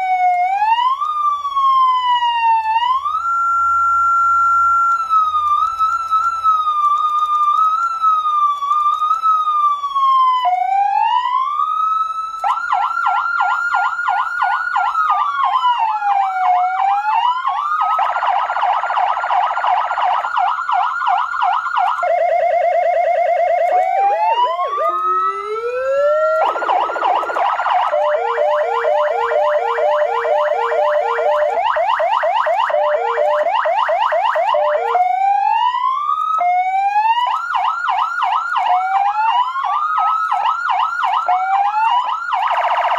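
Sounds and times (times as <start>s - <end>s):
electronic siren wailing and yelping: 12.7s - 42.9s.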